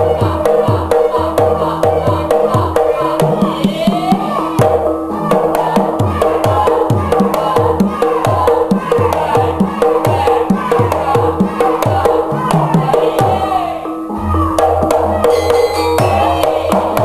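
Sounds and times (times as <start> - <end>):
drum beat dropping in pitch: 0.0 - 17.0
sustained melody: 13.4 - 17.0.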